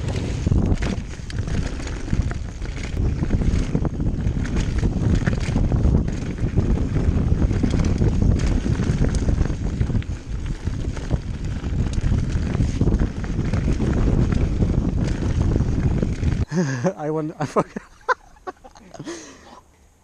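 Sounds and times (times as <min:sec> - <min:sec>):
wind rumble on microphone: 0:00.0 - 0:16.8
bike rattling over bumps: 0:00.0 - 0:18.6.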